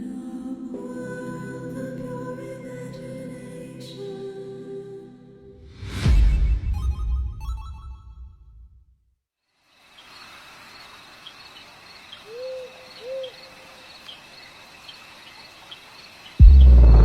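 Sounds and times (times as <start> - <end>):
loud low boom: 5.6 - 8.8, 16.4 - 17.0
crickets chirping: 9.5 - 17.0
owl hooting: 12.1 - 13.8.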